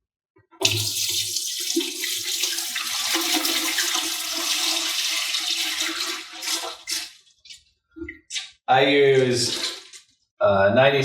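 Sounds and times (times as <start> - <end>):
liquid being poured: 0.6 - 8.2, 9.1 - 10.1.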